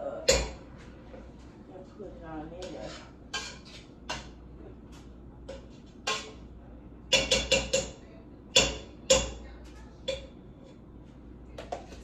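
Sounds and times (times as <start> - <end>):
utensil knocking on cookware: 7.1 - 9.4.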